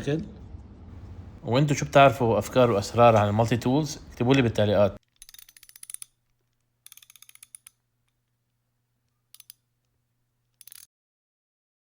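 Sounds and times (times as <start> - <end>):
faint low hum: 0.0 - 5.0
small metallic clicks: 5.0 - 10.9.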